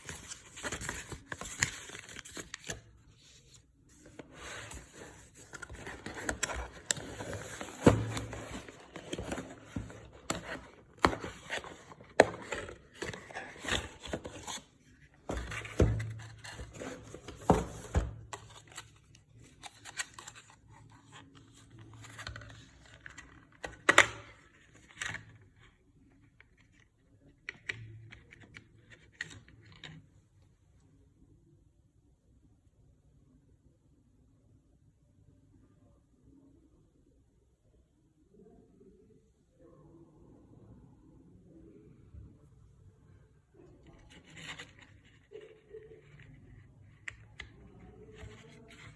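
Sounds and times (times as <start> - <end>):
packaging rustling and scraping: 0.0 - 20.6.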